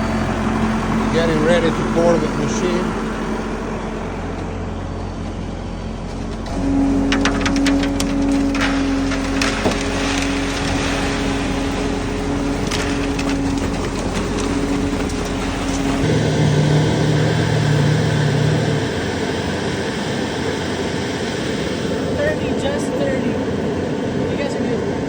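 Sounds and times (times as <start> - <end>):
machine engine running: 0.0 - 25.0
scraping and rattling: 4.3 - 18.2.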